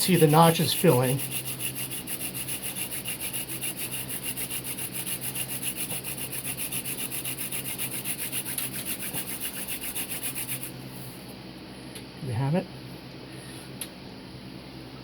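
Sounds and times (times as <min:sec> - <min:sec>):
wooden spindle grinding rhythmic rasp: 0:00.0 - 0:10.8.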